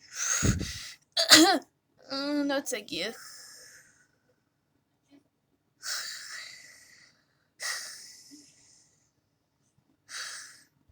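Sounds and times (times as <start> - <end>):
girl's breathy snores: 0.2 - 0.9, 5.8 - 8.7.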